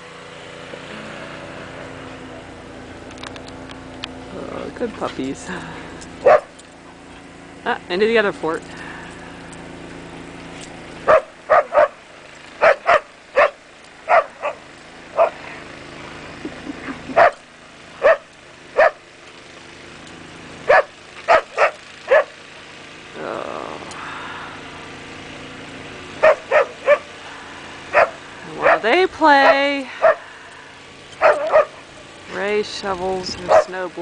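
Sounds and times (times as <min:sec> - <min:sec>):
engine hum: 0:00.0 - 0:34.0
dog play-barking: 0:06.2 - 0:06.6, 0:11.1 - 0:12.0, 0:12.6 - 0:15.4, 0:17.1 - 0:17.4, 0:18.0 - 0:19.0, 0:20.7 - 0:22.4, 0:26.2 - 0:27.2, 0:27.9 - 0:30.2, 0:31.2 - 0:31.9, 0:33.4 - 0:33.8.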